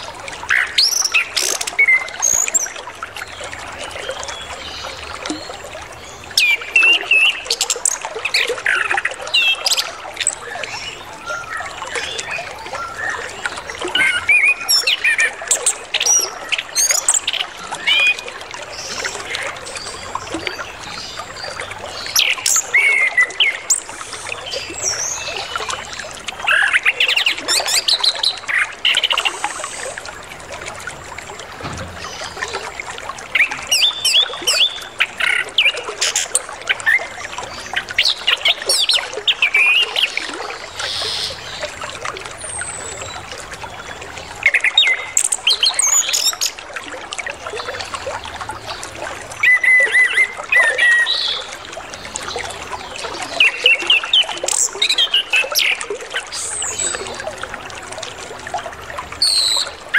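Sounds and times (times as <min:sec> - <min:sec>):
water trickling: 0:00.0 - 0:59.9.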